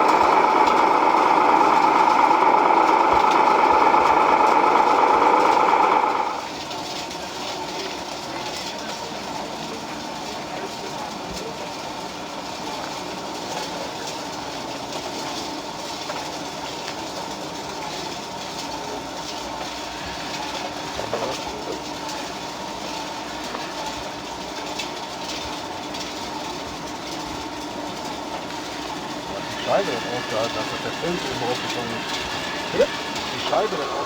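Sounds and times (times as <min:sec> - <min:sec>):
model machinery whining: 0:00.0 - 0:06.6, 0:27.2 - 0:34.0.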